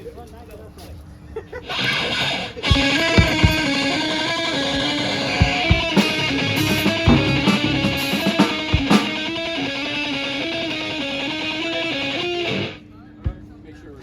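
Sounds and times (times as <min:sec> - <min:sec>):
electric guitar: 0:01.7 - 0:12.8
drum hits: 0:02.7 - 0:04.0, 0:04.7 - 0:09.3
live rock band playing: 0:02.7 - 0:12.8.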